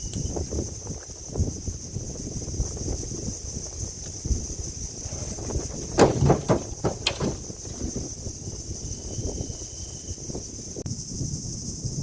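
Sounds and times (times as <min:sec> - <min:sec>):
short knocks: 0:05.0 - 0:08.0.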